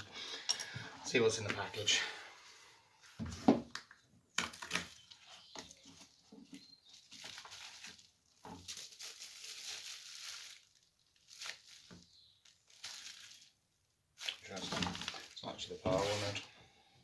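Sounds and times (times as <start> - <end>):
packaging crinkling and tearing: 4.4 - 13.6, 14.2 - 16.4.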